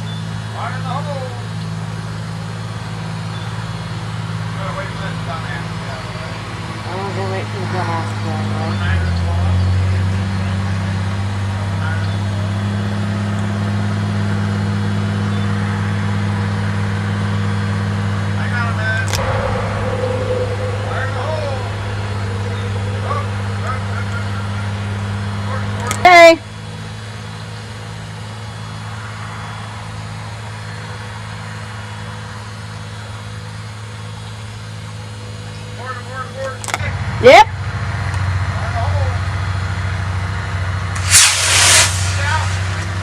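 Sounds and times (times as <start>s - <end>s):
engine idling hum: 0.0s - 41.2s
low hum: 18.2s - 27.2s
constant hiss: 40.9s - 43.0s.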